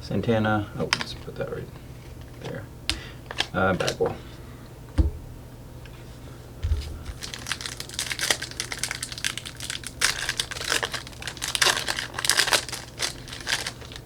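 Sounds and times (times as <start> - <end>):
crinkling card packaging: 0.8 - 1.3, 1.9 - 4.2, 6.7 - 14.0
soft thump: 5.0 - 5.4, 6.6 - 7.2.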